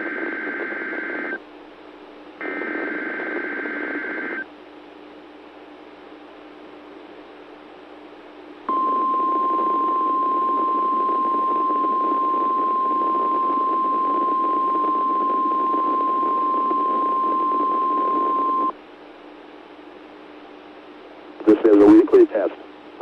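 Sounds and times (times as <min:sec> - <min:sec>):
steady warning alarm tone: 0:08.7 - 0:18.7
radio hiss: 0:21.4 - 0:23.0.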